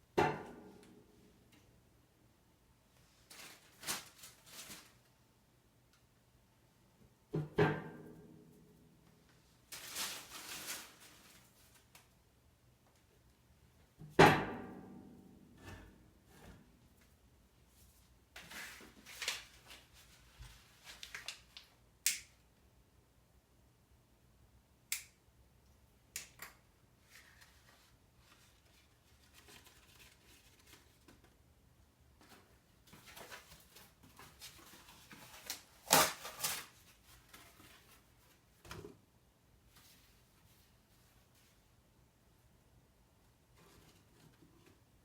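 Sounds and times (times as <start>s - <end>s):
rustling: 3.1s - 5.1s, 9.6s - 12.1s, 27.0s - 31.4s.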